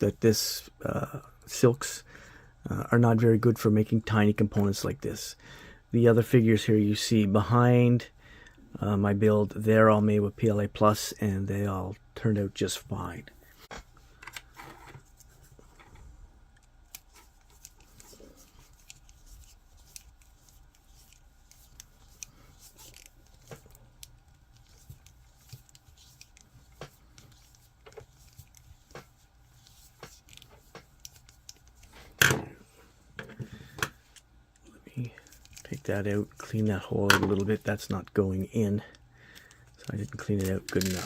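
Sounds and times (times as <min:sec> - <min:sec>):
plastic parts clicking and rubbing: 0:13.7 - 0:41.0.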